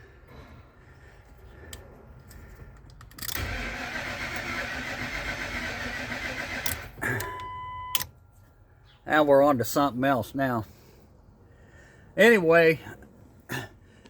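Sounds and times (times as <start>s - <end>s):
starter cranking engine: 3.2s - 7.0s.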